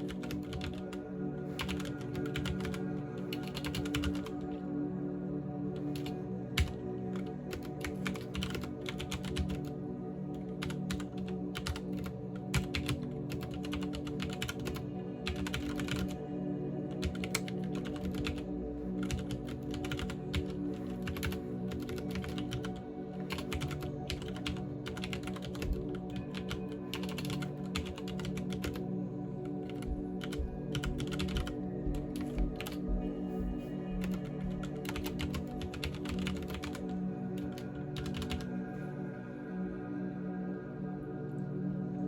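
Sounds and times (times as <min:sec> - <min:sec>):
mechanical keyboard typing: 0:00.0 - 0:00.9, 0:01.6 - 0:04.5, 0:05.8 - 0:09.7, 0:10.6 - 0:16.2, 0:17.0 - 0:18.4, 0:19.0 - 0:28.8, 0:29.6 - 0:32.8, 0:34.0 - 0:38.4
soft background music: 0:00.0 - 0:42.0.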